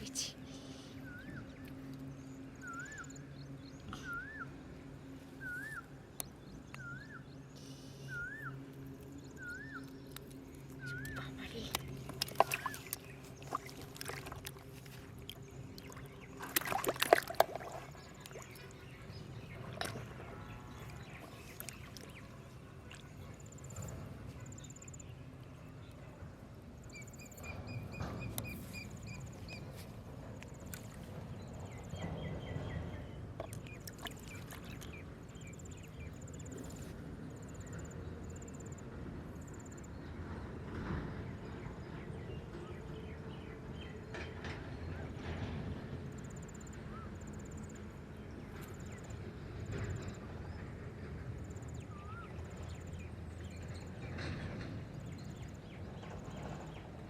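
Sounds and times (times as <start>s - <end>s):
water sloshing and splashing: 9.0s - 24.3s, 32.8s - 37.2s.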